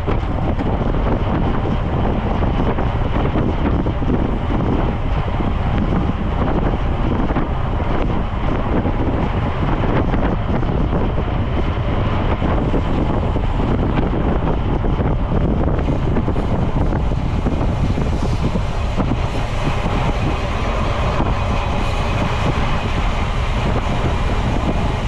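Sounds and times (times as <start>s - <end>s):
wind rush over microphone: 0.0s - 25.0s.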